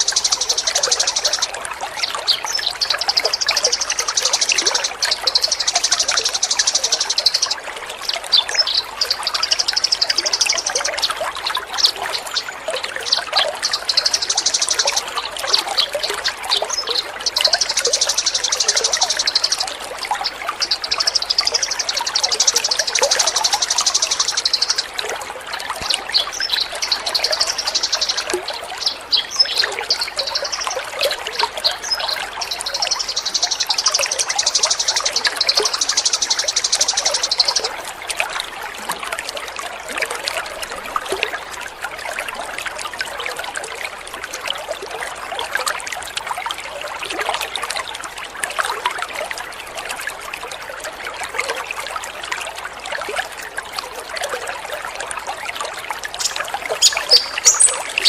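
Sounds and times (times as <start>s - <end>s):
songbird trilling: 0.0s - 1.5s, 20.7s - 24.9s, 31.6s - 37.7s, 56.2s - 58.0s
water trickling and splashing: 0.0s - 58.0s.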